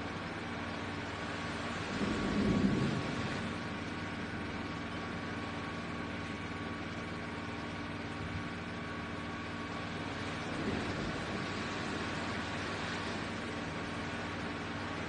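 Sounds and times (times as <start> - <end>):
engine hum: 0.0 - 15.0
low rumble: 1.0 - 6.9, 9.5 - 15.0.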